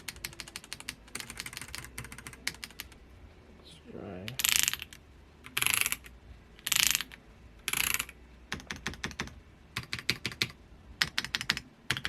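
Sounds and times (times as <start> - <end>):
mechanical keyboard clicking: 0.0 - 3.0, 5.5 - 12.0.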